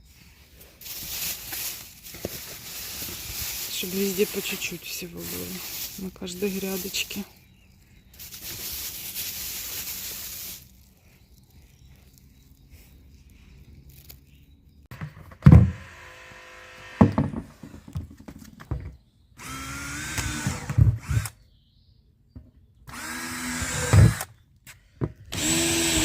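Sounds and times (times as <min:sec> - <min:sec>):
cordless drill whining: 0:15.7 - 0:17.2, 0:19.4 - 0:21.4, 0:22.9 - 0:24.3, 0:25.3 - 0:26.0.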